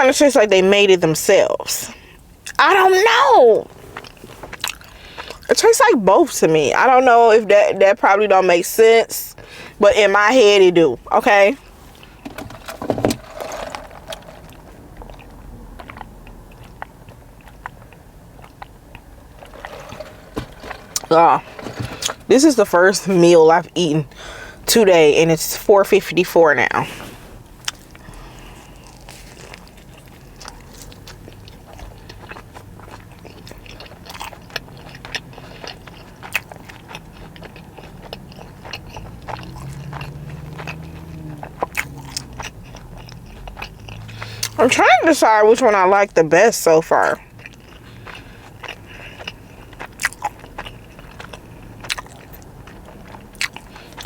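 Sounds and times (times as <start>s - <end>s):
person chewing food: 3.7s - 5.5s, 11.6s - 22.3s, 27.4s - 44.6s, 47.2s - 54.0s
small crunches: 11.6s - 16.9s, 17.6s - 22.7s, 27.4s - 44.6s.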